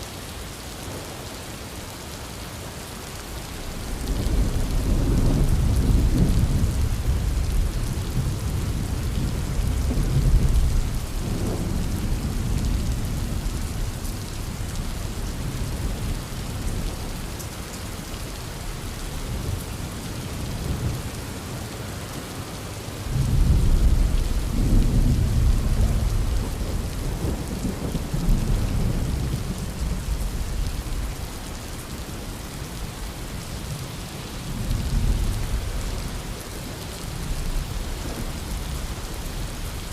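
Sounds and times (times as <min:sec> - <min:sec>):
heavy rain falling: 0:00.0 - 0:39.9
thunder rumbling: 0:03.8 - 0:17.3, 0:23.1 - 0:31.4.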